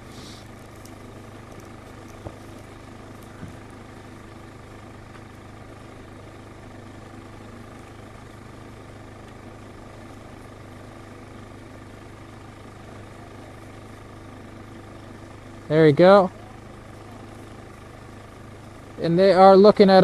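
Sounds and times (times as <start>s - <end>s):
engine running with low hum: 0.0s - 20.0s.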